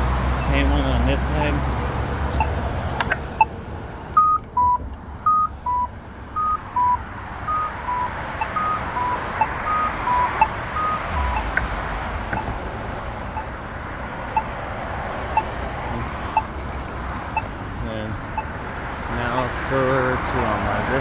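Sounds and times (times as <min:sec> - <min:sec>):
pedestrian signal locator ticking: 0:00.0 - 0:21.0
alternating high and low beeps: 0:00.4 - 0:01.6, 0:04.2 - 0:12.6, 0:13.3 - 0:13.7, 0:14.3 - 0:14.6, 0:15.3 - 0:16.6.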